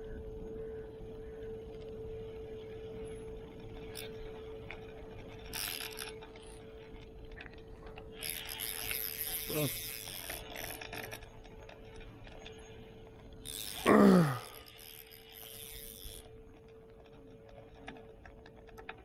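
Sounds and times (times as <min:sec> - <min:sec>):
fishing reel ratcheting: 0:03.9 - 0:06.6, 0:08.1 - 0:12.6, 0:13.4 - 0:16.3.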